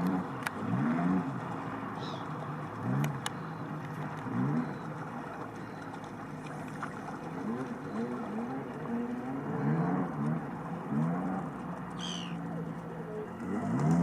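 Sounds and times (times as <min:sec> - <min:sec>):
low animal calls: 0:12.0 - 0:12.4.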